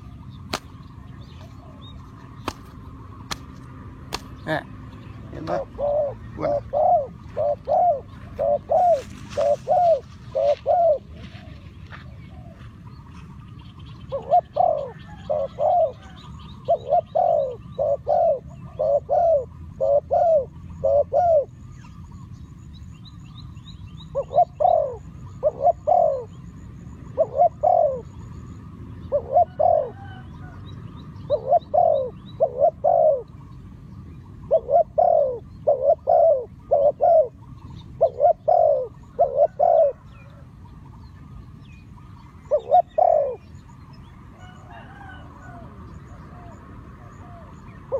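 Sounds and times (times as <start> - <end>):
small birds chirping: 0.0 - 47.9
dove cooing: 4.1 - 13.4, 14.0 - 21.8, 24.1 - 30.6, 31.2 - 33.5, 34.3 - 40.9, 42.0 - 47.9.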